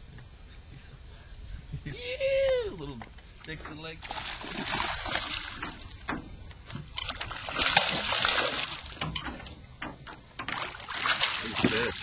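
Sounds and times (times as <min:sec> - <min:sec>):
water splashing and sloshing: 0:03.0 - 0:12.0.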